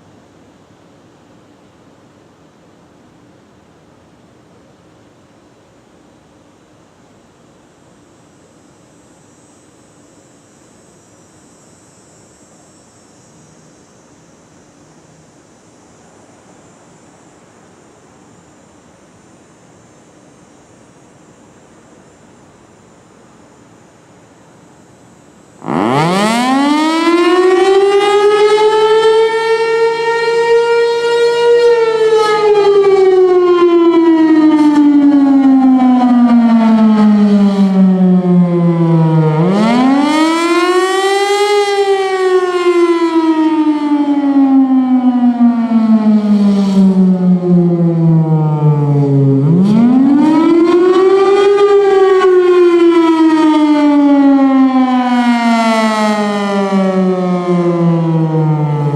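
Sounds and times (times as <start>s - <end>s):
warning siren wailing: 25.6s - 58.9s.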